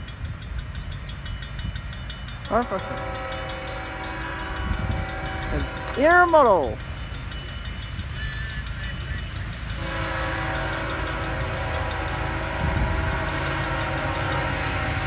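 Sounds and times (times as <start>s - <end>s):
diesel locomotives rumbling: 0.0s - 15.0s
locomotive horn chord: 2.5s - 6.3s, 9.7s - 15.0s.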